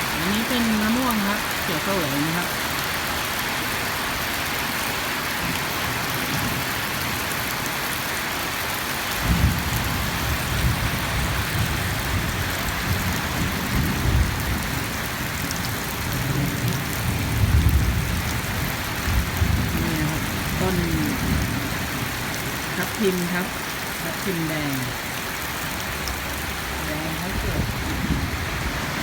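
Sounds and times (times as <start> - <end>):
heavy rain pouring: 0.0 - 29.0
low rumbling: 25.9 - 29.0.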